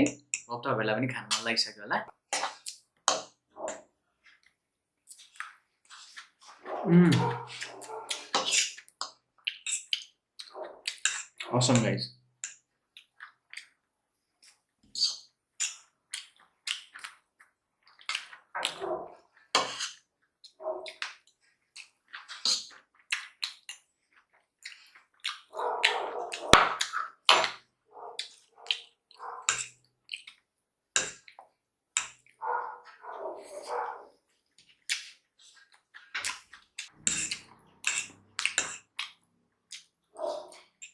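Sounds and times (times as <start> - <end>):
person chewing noodles: 4.2 - 11.4, 12.5 - 27.3, 27.9 - 30.5, 31.1 - 40.9
slurping: 5.1 - 11.5, 32.2 - 40.9.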